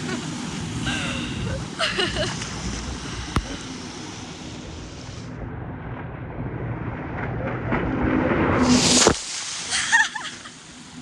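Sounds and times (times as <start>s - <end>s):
jet ski engine rumbling: 0.0s - 5.3s
loud rushing noise: 7.9s - 9.7s.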